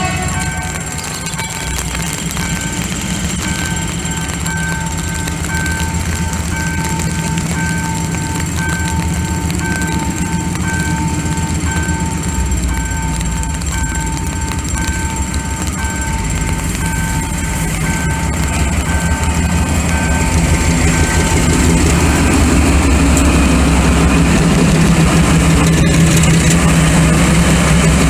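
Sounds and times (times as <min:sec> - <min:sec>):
two-tone crossing signal beeps: 0:00.0 - 0:06.8, 0:10.7 - 0:22.7
freight train rumbling: 0:00.0 - 0:28.0
heavy rain hiss: 0:00.0 - 0:28.0.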